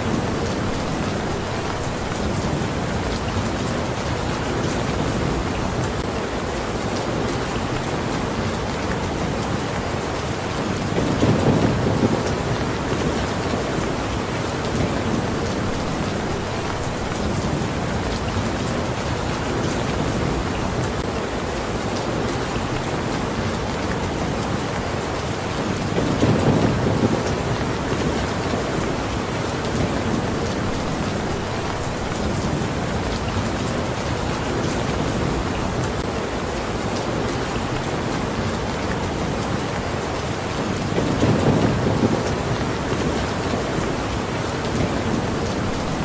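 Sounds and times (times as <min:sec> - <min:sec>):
heavy rain: 0:00.0 - 0:46.0
low rumble of thunder: 0:10.9 - 0:14.0, 0:25.9 - 0:29.0, 0:40.8 - 0:43.9.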